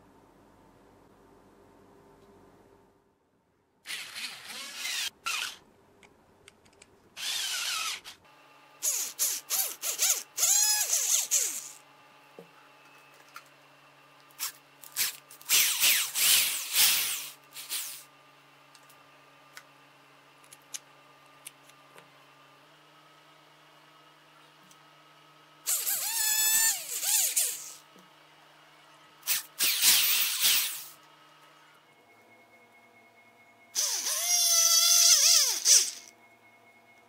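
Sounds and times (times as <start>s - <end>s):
small electric power tool running: 3.9s - 5.6s, 7.2s - 8.2s, 8.8s - 11.8s, 25.6s - 27.8s, 33.8s - 36.1s.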